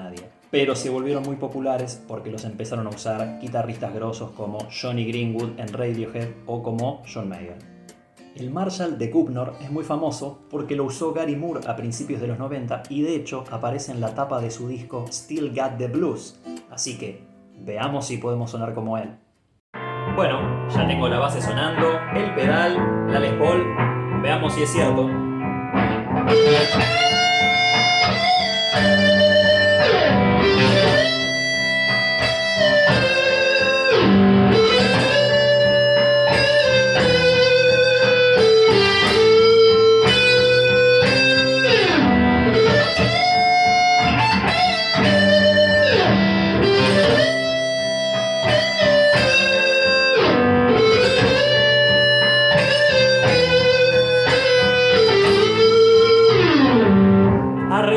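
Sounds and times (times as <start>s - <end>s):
backing track: 19.8s - 57.9s
distorted electric guitar lead: 19.8s - 57.9s.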